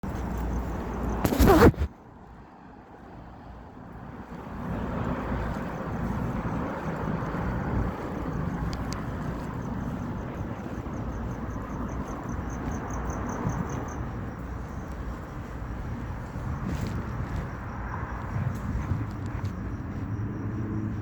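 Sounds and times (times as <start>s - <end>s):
low outdoor rumble: 3.5s - 21.0s
wind on microphone: 4.4s - 21.0s.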